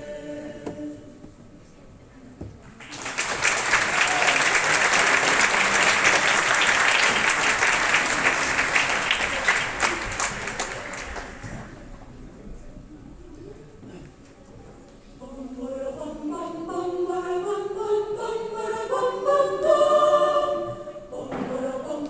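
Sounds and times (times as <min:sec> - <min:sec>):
audience applause: 0:02.7 - 0:12.1.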